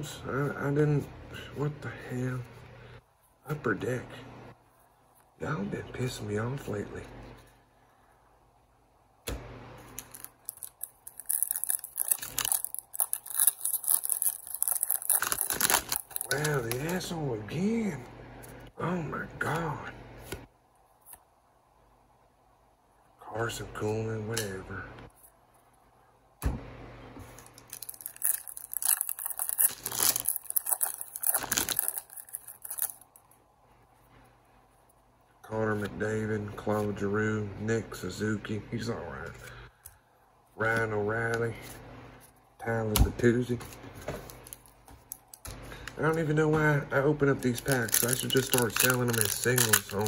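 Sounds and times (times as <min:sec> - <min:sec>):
foil pack crinkling and tearing: 0:09.9 - 0:17.1, 0:27.5 - 0:33.1, 0:47.3 - 0:50.0.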